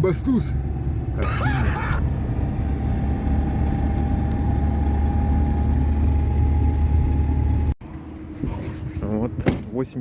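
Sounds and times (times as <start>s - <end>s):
van engine and road rumble: 0.0s - 10.0s.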